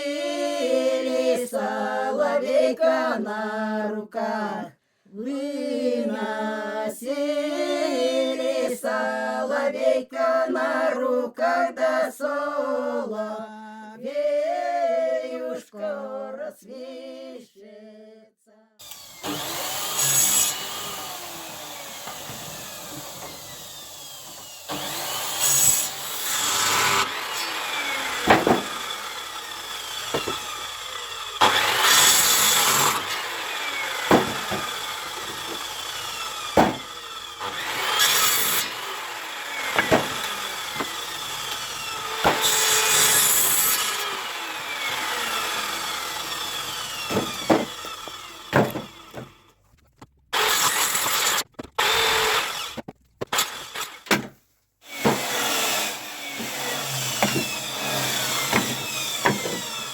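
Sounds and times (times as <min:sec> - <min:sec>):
a cappella folk singing: 0:00.0 - 0:18.8
saw rasping through wood: 0:18.8 - 0:49.5, 0:50.3 - 0:59.9
sharp knocks: 0:28.2 - 0:28.9, 0:30.1 - 0:30.5, 0:34.0 - 0:35.7, 0:36.6 - 0:36.9, 0:39.7 - 0:41.0, 0:42.2 - 0:42.6, 0:47.1 - 0:49.4, 0:55.0 - 0:55.4, 0:57.2 - 0:57.6, 0:58.5 - 0:59.7.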